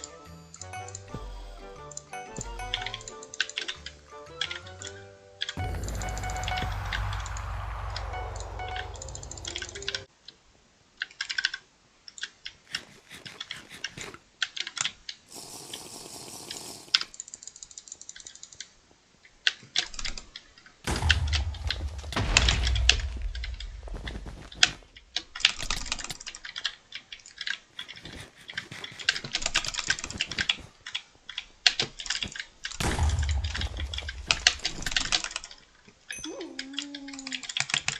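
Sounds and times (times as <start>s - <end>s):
deep thuds: 20.9s - 25.8s, 32.8s - 35.4s.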